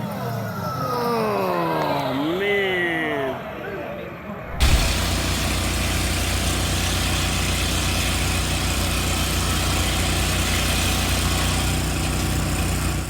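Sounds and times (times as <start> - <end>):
engine rumbling: 4.5 - 13.0.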